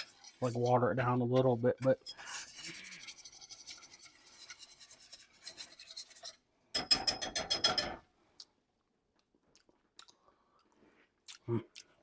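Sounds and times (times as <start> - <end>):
utensil scraping a metal pan: 0.0 - 6.5.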